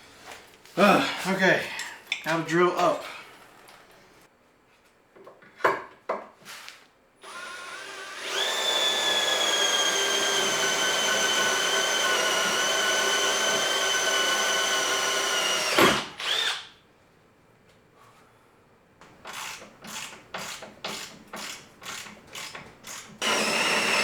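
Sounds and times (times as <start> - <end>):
power drill whining: 7.2 - 16.7, 19.3 - 24.0.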